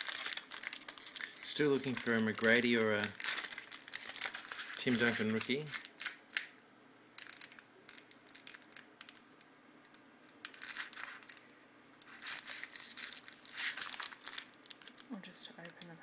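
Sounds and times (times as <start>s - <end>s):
wrapper crinkling: 0.0s - 6.6s, 7.2s - 9.4s, 10.3s - 15.1s.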